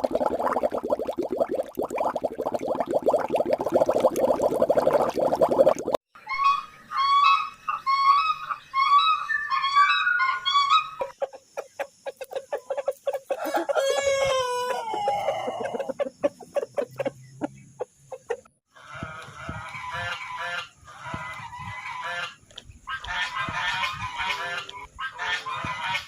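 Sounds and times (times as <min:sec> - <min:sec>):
fowl calling: 0:06.2 - 0:11.2, 0:18.8 - 0:26.0.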